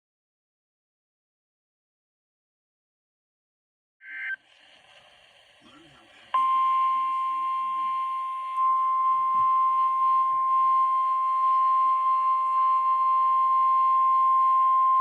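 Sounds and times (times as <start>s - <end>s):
weather radio alarm tone: 6.3s - 15.0s.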